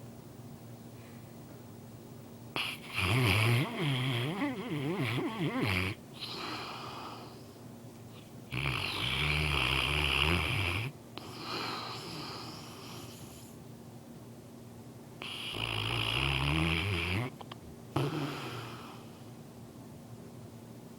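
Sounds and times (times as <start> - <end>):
dog snoring: 2.5 - 7.6, 8.5 - 13.6, 15.2 - 19.2
dog breathing softly: 3.6 - 9.3, 11.2 - 13.6.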